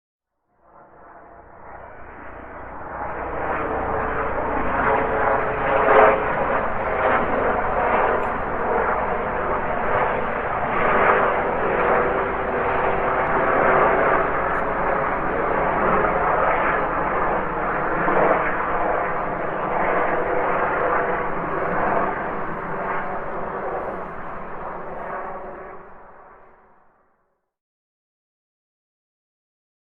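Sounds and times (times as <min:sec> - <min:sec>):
helicopter flying over: 0:00.6 - 0:27.1.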